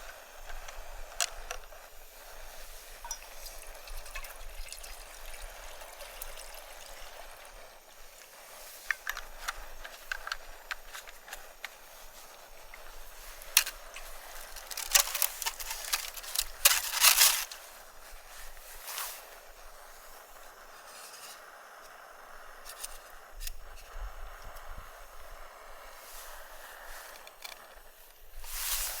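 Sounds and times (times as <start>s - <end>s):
sharp crackles and clicks: 12.8s - 17.6s.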